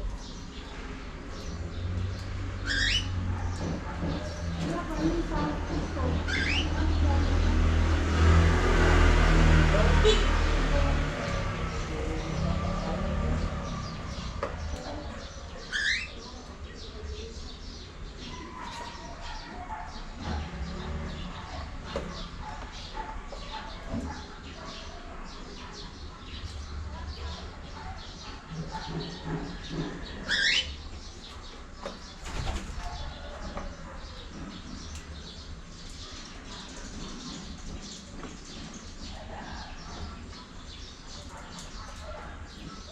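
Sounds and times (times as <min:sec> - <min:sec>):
cockatiels chirping: 0:02.6 - 0:03.7, 0:06.2 - 0:06.7, 0:15.6 - 0:16.2, 0:30.2 - 0:30.8.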